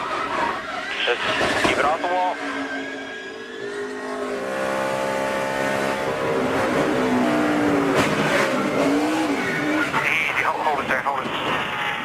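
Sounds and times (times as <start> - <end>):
race car engine running hard: 3.4 - 12.0.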